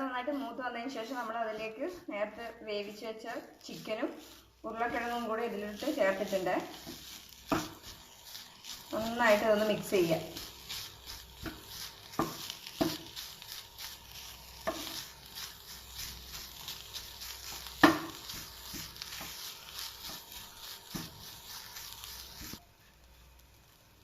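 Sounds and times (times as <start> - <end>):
food sizzling in a pan: 0.0 - 24.0
utensil scraping and knocking pan: 0.4 - 22.6.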